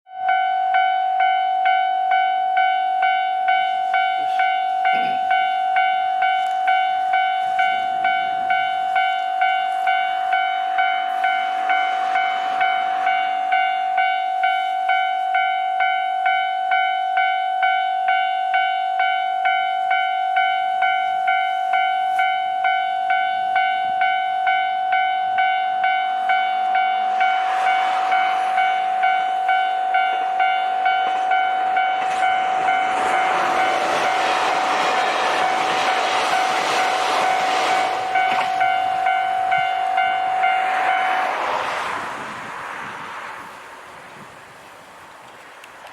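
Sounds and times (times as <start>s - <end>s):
level crossing warning bell: 0.1s - 41.7s
rushing noise: 7.9s - 15.3s, 25.0s - 45.2s.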